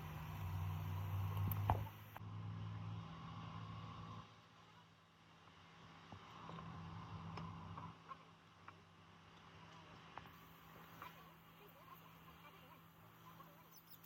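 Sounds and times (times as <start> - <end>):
motor humming: 0.0 - 2.2
light clicks: 1.2 - 1.9.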